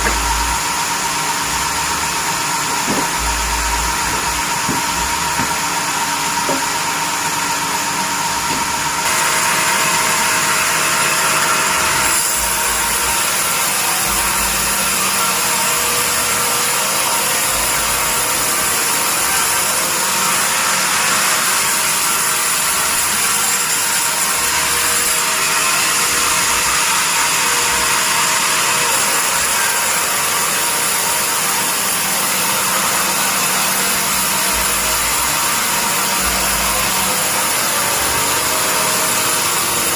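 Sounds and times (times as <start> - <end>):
bandsaw cutting a log: 0.0 - 39.9.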